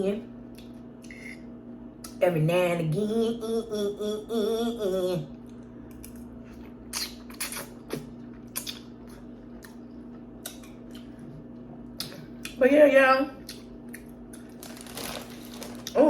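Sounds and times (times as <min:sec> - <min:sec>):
steady low hum: 0:00.0 - 0:16.0
woman humming: 0:02.9 - 0:05.3
person chewing food: 0:05.4 - 0:12.6, 0:13.4 - 0:16.0.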